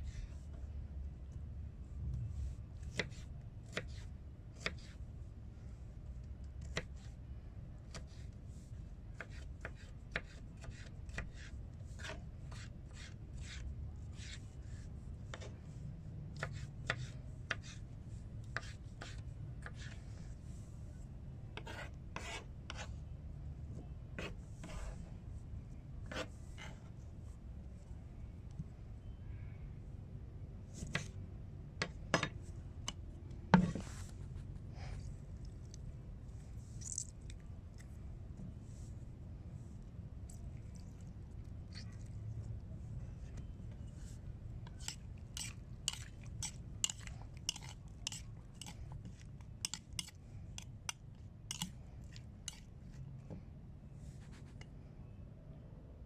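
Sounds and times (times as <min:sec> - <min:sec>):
knife slicing tomato on cutting board: 0:02.8 - 0:05.0, 0:09.2 - 0:14.4, 0:16.4 - 0:17.8, 0:18.4 - 0:20.0, 0:21.6 - 0:22.9, 0:24.2 - 0:25.0, 0:26.1 - 0:26.9, 0:31.8 - 0:34.0, 0:44.7 - 0:51.8.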